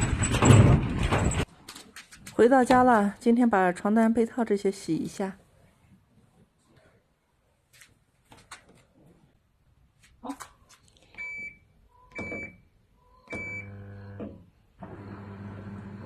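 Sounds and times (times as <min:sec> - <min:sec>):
washing machine panel beeping: 0:11.2 - 0:12.6, 0:13.3 - 0:14.2
washing machine humming: 0:14.8 - 0:16.0.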